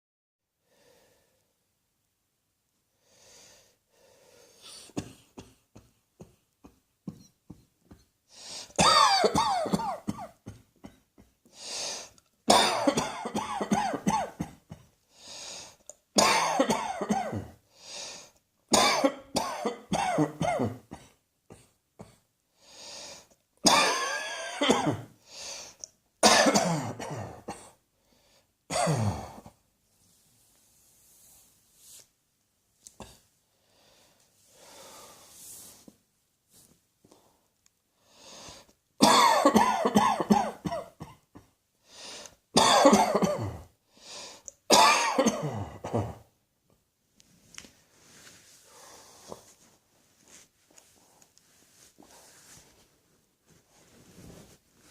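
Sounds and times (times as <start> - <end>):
person coughing: 4.7 - 8.0, 8.7 - 11.4, 12.5 - 14.9, 16.2 - 17.6, 18.7 - 22.2, 23.6 - 25.2, 26.2 - 27.8, 28.7 - 29.6, 39.0 - 41.6, 42.6 - 43.7, 44.7 - 46.3.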